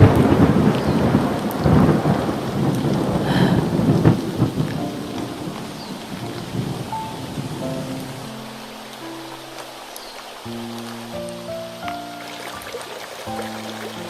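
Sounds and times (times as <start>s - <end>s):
thunder clap rumbling: 0.0s - 8.4s
rain hissing: 0.0s - 14.0s.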